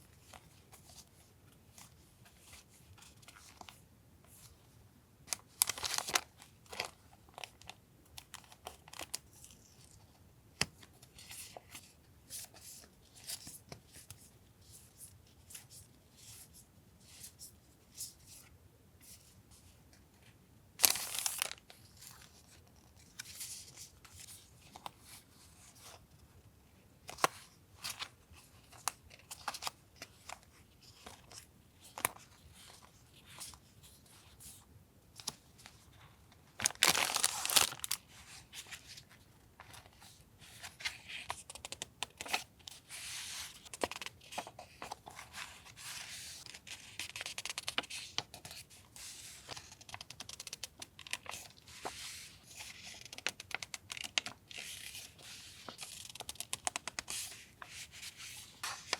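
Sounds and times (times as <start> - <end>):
paper rustling: 36.6 - 58.9.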